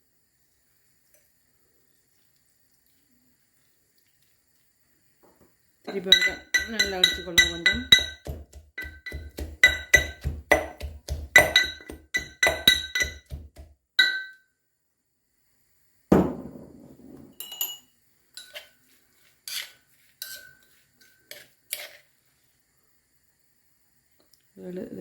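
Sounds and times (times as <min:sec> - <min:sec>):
pestle pounding in mortar: 0:06.1 - 0:14.2
clinks: 0:14.0 - 0:14.4, 0:17.4 - 0:18.7.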